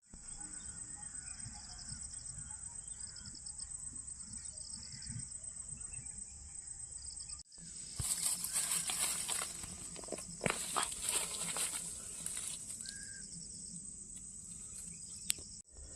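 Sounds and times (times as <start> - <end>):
insects chirring: 0.1 - 15.9
rustling with sharp cracks: 8.0 - 13.0.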